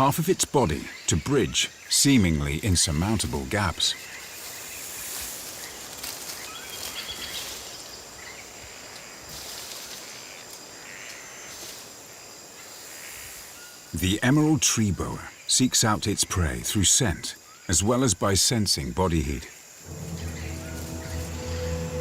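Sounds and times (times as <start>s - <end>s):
high insect drone: 0.0s - 22.0s
faint bird chirps: 3.9s - 11.8s.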